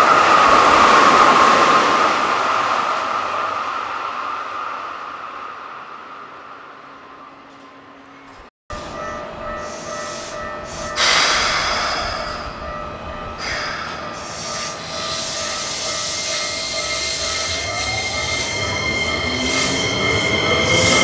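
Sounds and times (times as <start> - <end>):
train rushing past: 0.0 - 21.0
level crossing bell ringing: 8.7 - 21.0.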